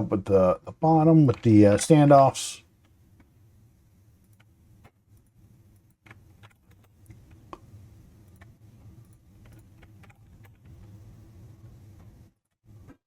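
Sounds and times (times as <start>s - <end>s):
low steady hum: 0.0s - 13.0s
computer mouse clicks: 4.2s - 10.9s
computer keyboard clicks: 6.0s - 7.4s.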